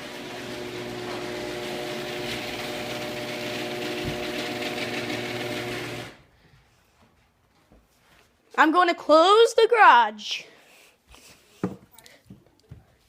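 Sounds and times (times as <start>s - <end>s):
garage door opener humming: 0.0s - 6.2s.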